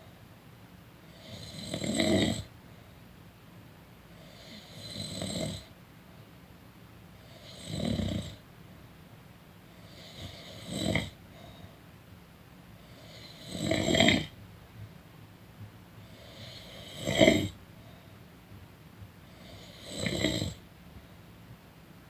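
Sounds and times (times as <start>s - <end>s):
person snoring: 1.2s - 2.5s, 7.3s - 8.4s, 9.9s - 11.2s, 12.9s - 14.3s, 16.1s - 17.6s, 19.4s - 20.6s.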